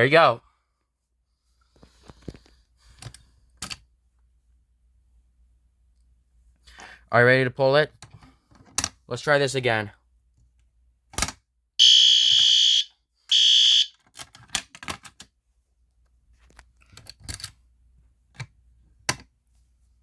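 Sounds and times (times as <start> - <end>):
fire alarm horn blasts: 11.8 - 14.0.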